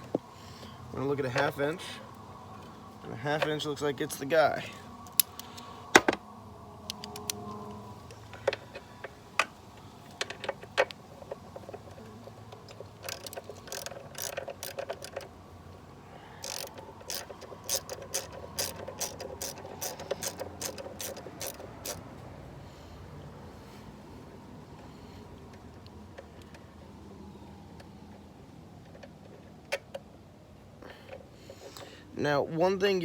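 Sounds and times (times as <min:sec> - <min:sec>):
ratchet wrench clicking: 0:06.9 - 0:07.5, 0:12.6 - 0:15.3, 0:16.4 - 0:22.0.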